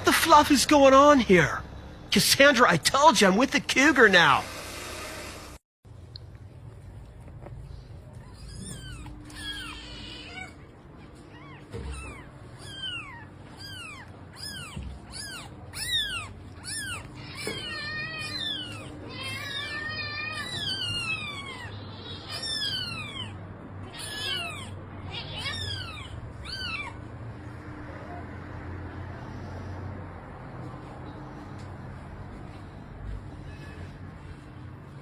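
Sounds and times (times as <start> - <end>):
cat mewing: 11.4 - 27.0.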